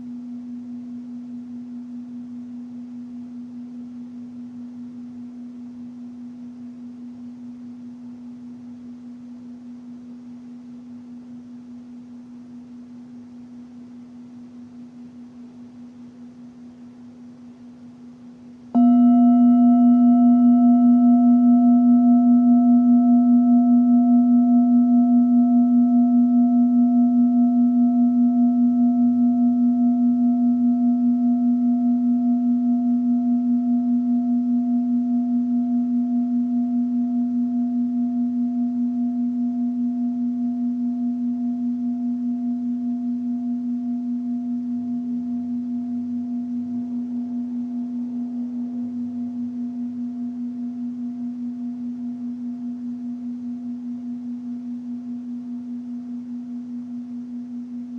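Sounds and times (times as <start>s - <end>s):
singing bowl ringing: 18.7s - 57.9s.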